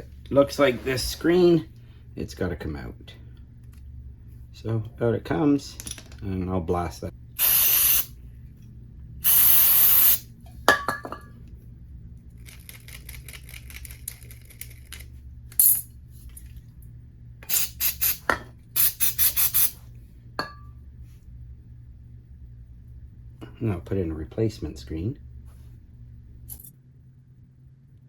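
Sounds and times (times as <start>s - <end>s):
hissing spray blasts: 7.4s - 8.1s, 9.2s - 10.2s
small metal parts clinking: 12.4s - 16.6s, 26.5s - 26.7s.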